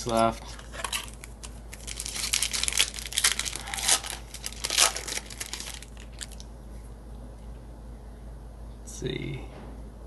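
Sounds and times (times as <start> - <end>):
foil wrapper crinkling and tearing: 0.0 - 6.5.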